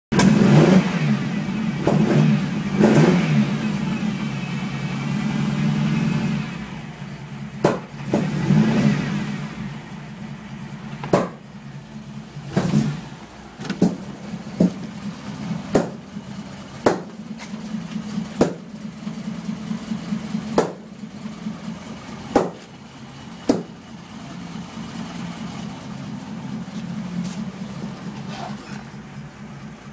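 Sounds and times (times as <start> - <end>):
exhaust backfire pops: 0.1 - 1.1, 1.8 - 3.4, 7.6 - 9.1, 11.0 - 11.6, 12.4 - 16.2, 16.8 - 18.9, 20.4 - 21.0, 22.3 - 22.8, 23.4 - 23.8
car engine idling and revving: 0.1 - 29.9.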